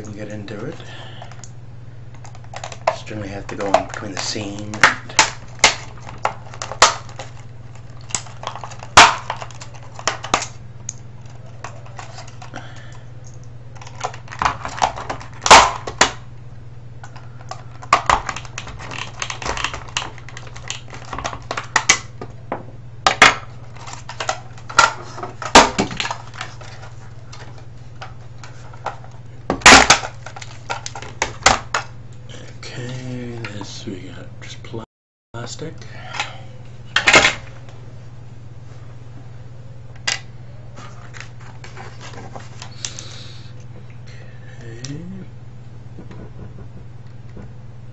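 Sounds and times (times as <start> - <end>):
steady low hum: 0.0 - 47.9
plastic case cracking and snapping: 2.1 - 12.6, 13.8 - 16.2, 17.0 - 22.4, 23.1 - 31.9.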